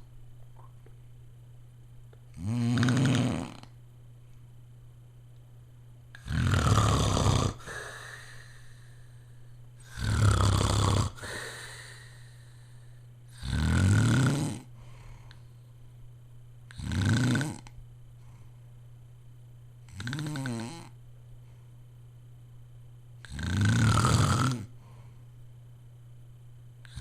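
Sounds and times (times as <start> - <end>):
man snoring: 2.4 - 3.7, 6.2 - 9.0, 9.8 - 12.3, 13.3 - 14.7, 16.7 - 17.7, 19.9 - 21.0, 23.2 - 24.8
quiet breathing: 7.4 - 13.5, 14.6 - 15.9, 18.1 - 18.9, 20.8 - 22.0, 24.7 - 25.5.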